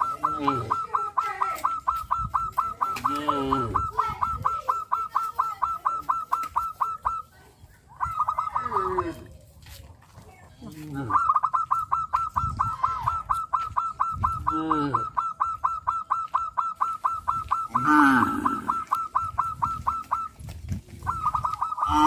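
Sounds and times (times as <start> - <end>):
short high bird calls: 0.0 - 9.3, 10.6 - 22.0
lower honking calls: 11.1 - 20.4.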